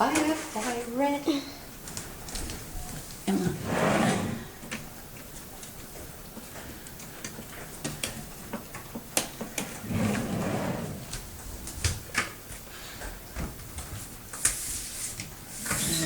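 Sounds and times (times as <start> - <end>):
short scraping swishes: 3.5 - 4.5.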